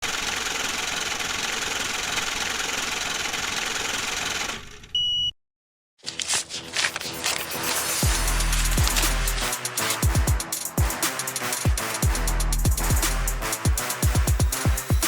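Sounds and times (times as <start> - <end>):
short high beep: 5.0 - 5.4.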